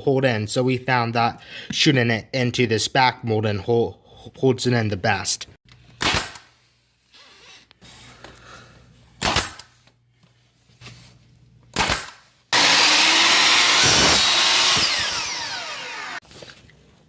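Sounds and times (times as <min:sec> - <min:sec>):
nail gun firing: 0:06.0 - 0:06.5, 0:09.2 - 0:09.7, 0:11.7 - 0:16.2
loud power tool: 0:12.6 - 0:16.2.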